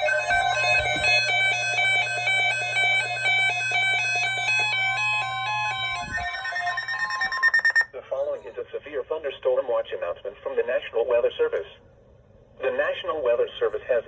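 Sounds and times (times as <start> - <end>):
steady low hum: 0.0 - 7.8
electronic beeping melody: 0.0 - 7.9.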